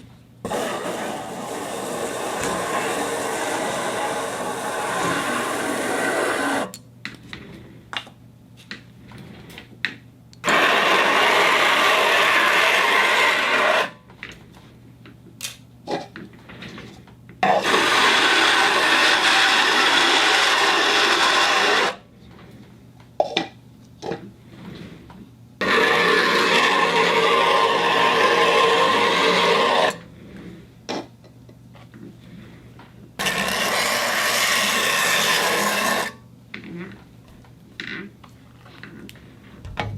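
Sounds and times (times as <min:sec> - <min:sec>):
faint low hum: 0:38.2 - 0:39.9
turntable whirring: 0:39.6 - 0:39.9.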